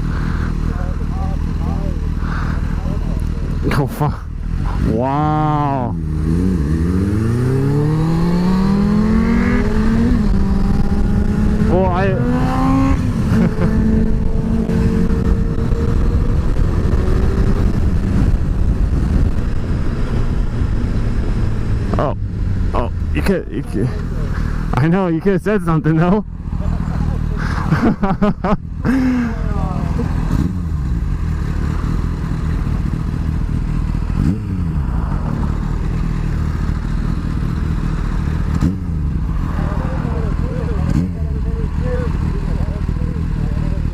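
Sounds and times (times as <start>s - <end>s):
motorcycle engine: 0.0s - 43.9s
wind rush on microphone: 9.6s - 22.7s.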